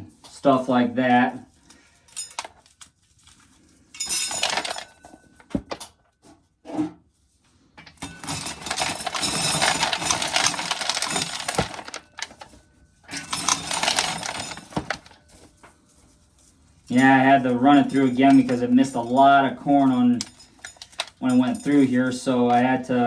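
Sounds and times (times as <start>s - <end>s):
corn kernels clattering into container: 4.1s - 4.9s, 8.0s - 15.2s, 16.9s - 23.0s.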